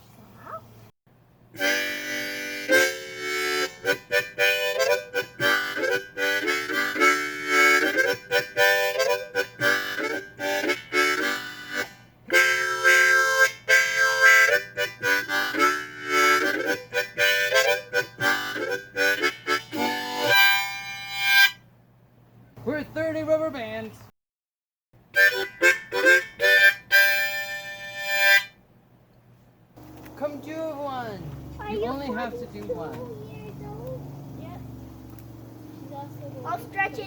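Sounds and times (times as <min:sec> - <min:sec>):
harmonica melody: 0:01.6 - 0:21.7, 0:25.0 - 0:28.6.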